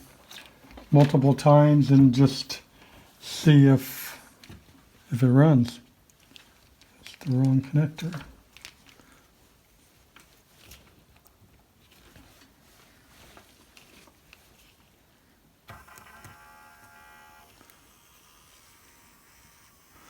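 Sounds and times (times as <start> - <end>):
small motor whine: 15.7 - 20.0.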